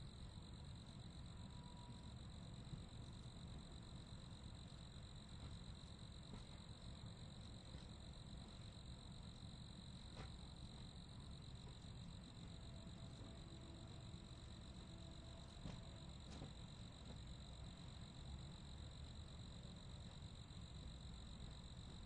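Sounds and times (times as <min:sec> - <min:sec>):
crickets chirping: 0:00.0 - 0:22.0.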